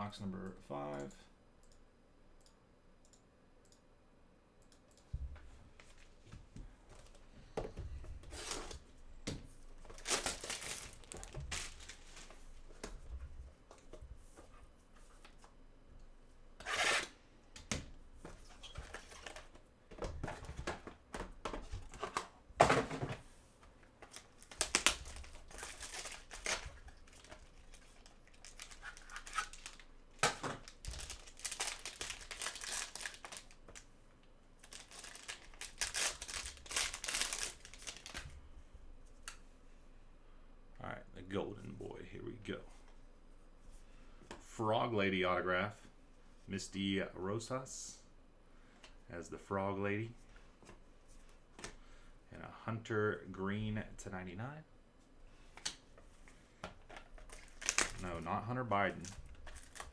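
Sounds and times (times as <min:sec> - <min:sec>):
plastic wrapper tearing and crinkling: 0:09.9 - 0:12.3, 0:24.0 - 0:33.8, 0:34.6 - 0:38.2, 0:57.2 - 0:58.2, 0:58.9 - 0:59.9.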